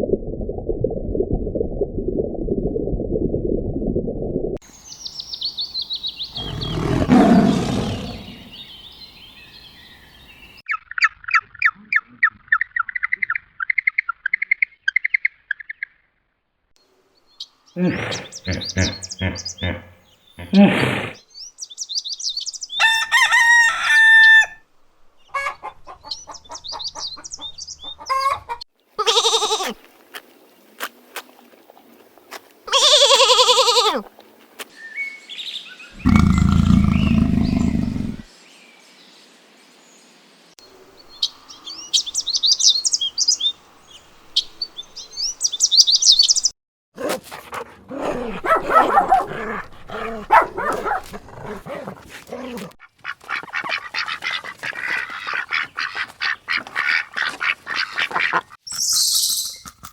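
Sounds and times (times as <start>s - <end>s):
deep animal call: 6.3s - 8.6s, 17.8s - 21.2s, 36.0s - 38.3s
rooster crowing: 22.8s - 24.6s.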